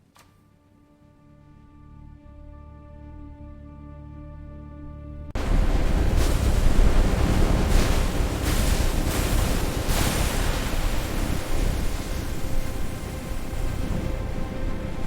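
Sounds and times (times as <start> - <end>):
faint background music: 0.0 - 5.4, 12.1 - 15.0
loud rushing rumbling noise: 5.4 - 15.0.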